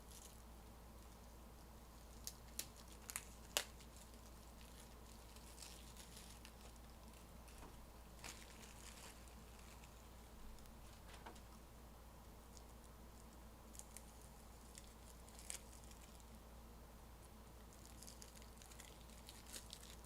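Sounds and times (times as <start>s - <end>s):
light crinkling rustles: 0.0s - 11.6s, 12.2s - 16.4s, 17.2s - 20.0s
low steady hum: 0.0s - 20.0s.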